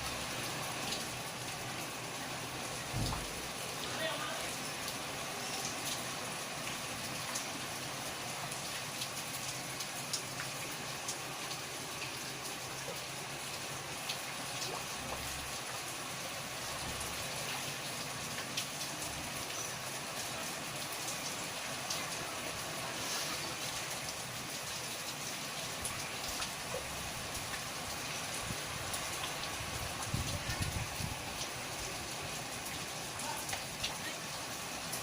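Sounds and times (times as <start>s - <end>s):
raindrops ticking on surfaces: 0.0s - 35.0s
steady rain hissing: 0.0s - 35.0s.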